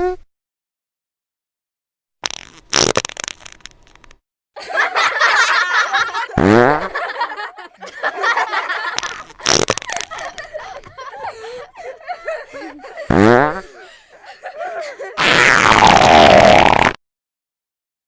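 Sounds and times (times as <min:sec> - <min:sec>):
laughter: 0:04.6 - 0:15.5
fart sound effects: 0:15.2 - 0:17.0.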